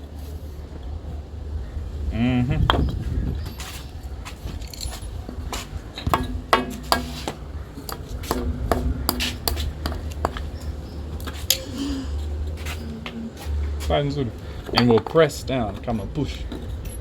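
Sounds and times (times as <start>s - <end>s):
tools knocking and clinking: 4.5s - 11.7s, 14.6s - 17.0s.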